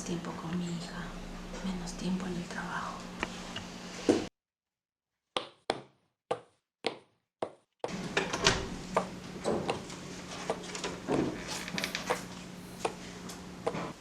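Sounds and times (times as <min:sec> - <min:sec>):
small clicks and movement: 0:10.7 - 0:12.2.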